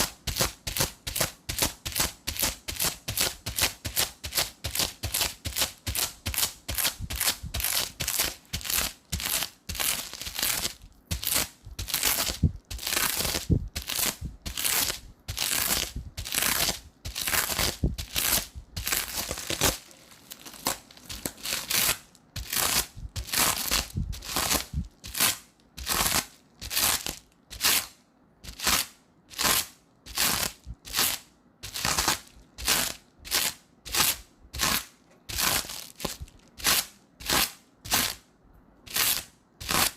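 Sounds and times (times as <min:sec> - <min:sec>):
tape peeling off: 0:01.5 - 0:27.9.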